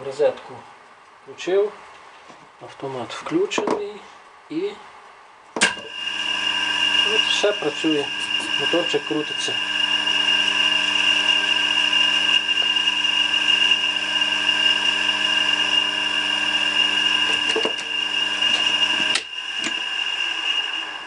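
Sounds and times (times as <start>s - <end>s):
electric motor hum and whine: 5.6s - 21.0s.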